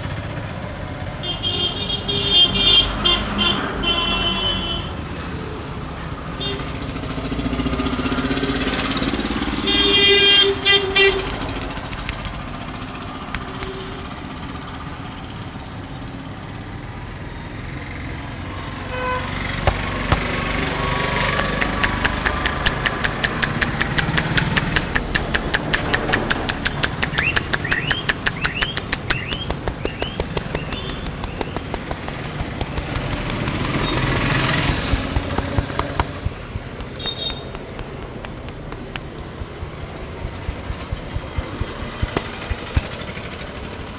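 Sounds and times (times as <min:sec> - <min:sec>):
street traffic: 0:00.0 - 0:43.9
hands slapping on a head: 0:13.3 - 0:13.8, 0:19.6 - 0:43.2.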